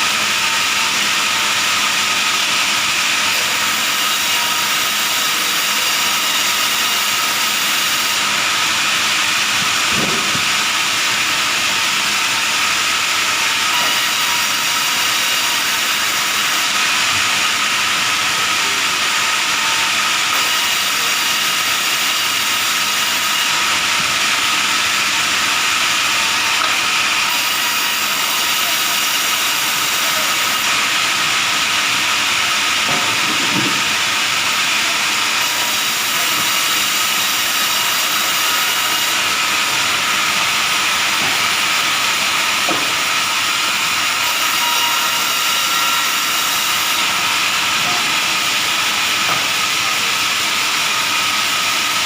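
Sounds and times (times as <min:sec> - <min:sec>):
power saw whining: 0:00.0 - 0:52.0.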